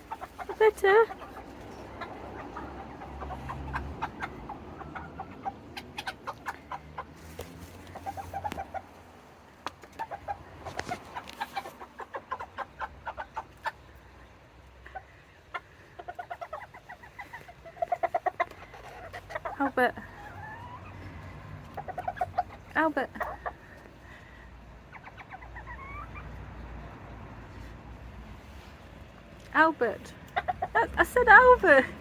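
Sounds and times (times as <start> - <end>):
chickens clucking: 0.0 - 32.0.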